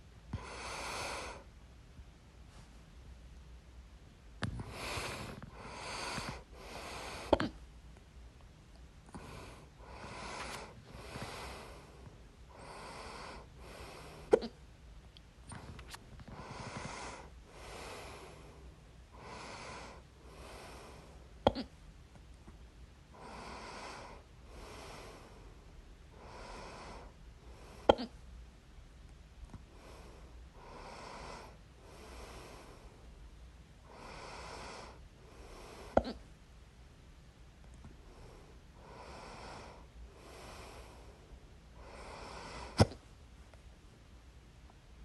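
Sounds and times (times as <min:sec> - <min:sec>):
breathing in and out: 0:00.3 - 0:01.5, 0:04.4 - 0:07.6, 0:09.1 - 0:14.6, 0:15.4 - 0:21.7, 0:23.1 - 0:28.2, 0:29.5 - 0:33.2, 0:33.8 - 0:36.2, 0:37.8 - 0:43.1
person hiccuping: 0:21.5 - 0:21.7, 0:27.9 - 0:28.1, 0:36.0 - 0:36.2.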